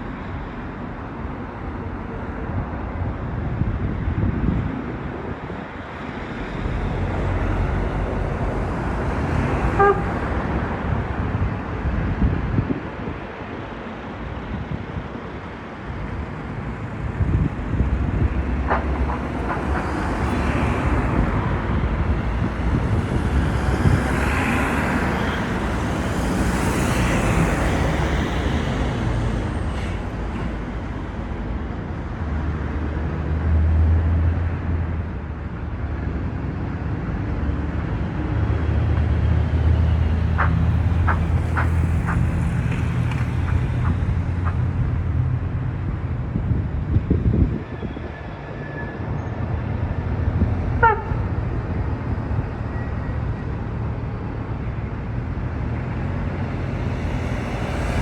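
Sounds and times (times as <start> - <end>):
vehicle passing: 39.3 - 45.8, 56.0 - 58.0.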